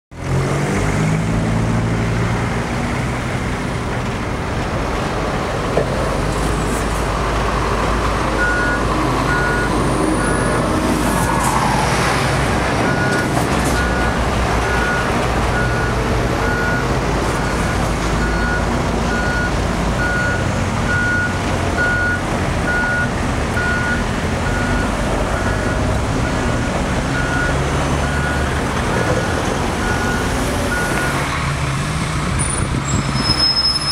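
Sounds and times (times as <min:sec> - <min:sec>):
heavy machinery diesel engines: 0:00.1 - 0:33.9
reversing alarm beeping: 0:08.4 - 0:10.7, 0:12.8 - 0:31.2.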